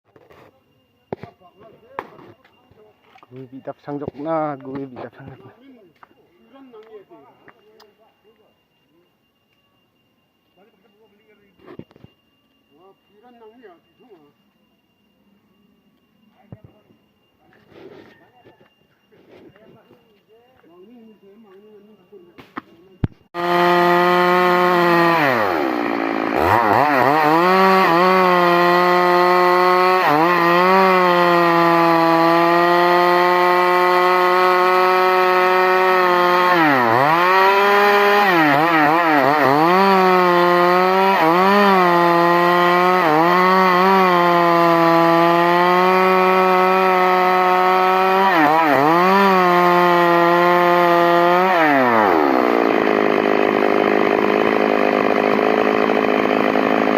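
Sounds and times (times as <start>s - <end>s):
chainsaw revving: 23.3s - 56.9s.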